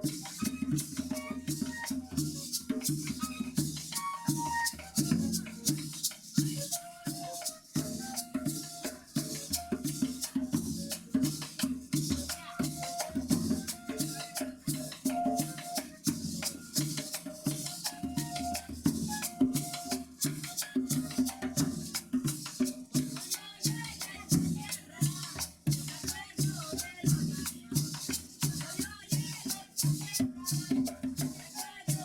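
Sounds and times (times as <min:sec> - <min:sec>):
flute melody: 0:00.0 - 0:22.0
maraca shaking: 0:00.0 - 0:32.0.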